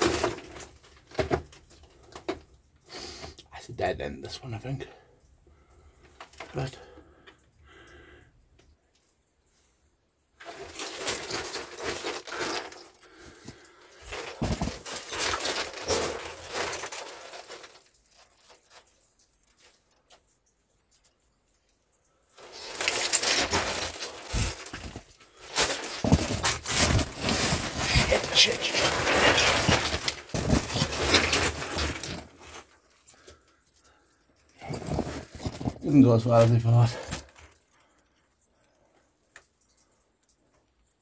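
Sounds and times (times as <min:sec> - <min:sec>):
person rustling and scraping: 0:10.4 - 0:19.8, 0:22.4 - 0:38.1.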